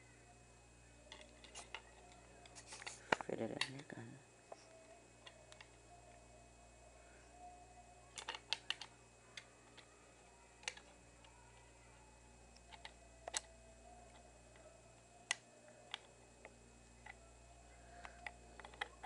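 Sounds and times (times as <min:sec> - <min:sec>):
small parts clicking: 0:01.1 - 0:05.8, 0:08.0 - 0:09.9, 0:10.5 - 0:11.7, 0:12.5 - 0:17.2, 0:17.8 - 0:19.0.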